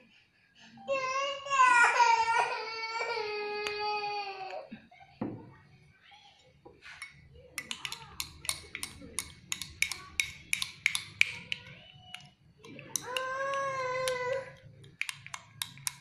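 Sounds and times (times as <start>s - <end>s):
toddler crying: 0.9s - 4.7s, 13.0s - 14.6s
metal spoon clinking against glass: 7.0s - 16.0s.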